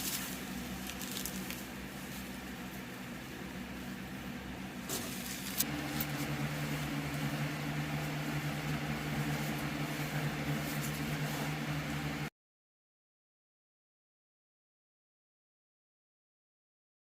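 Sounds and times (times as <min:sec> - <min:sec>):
vacuum cleaner humming: 0:04.8 - 0:12.3.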